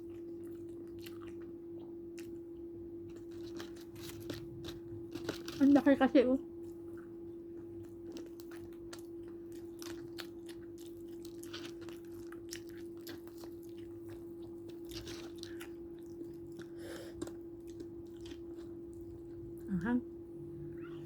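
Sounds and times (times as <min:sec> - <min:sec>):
chewing and biting food: 0:00.0 - 0:06.0, 0:06.6 - 0:19.7
food crunching: 0:00.0 - 0:19.7
steady hum: 0:13.6 - 0:21.0.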